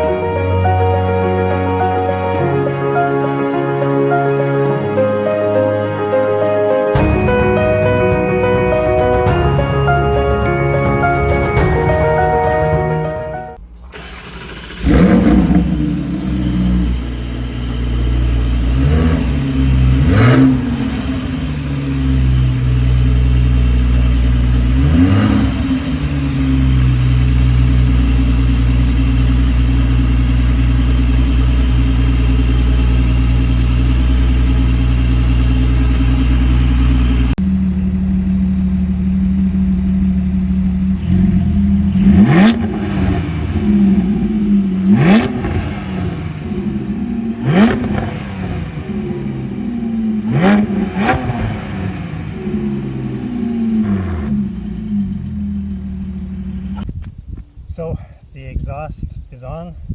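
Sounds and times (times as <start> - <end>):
car engine idling and revving: 13.6 - 56.9.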